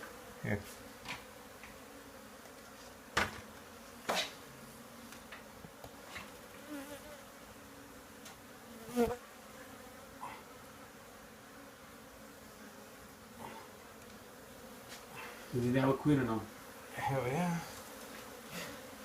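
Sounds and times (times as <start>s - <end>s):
bees buzzing: 0.0s - 19.0s
light clicks from hive: 14.0s - 14.2s.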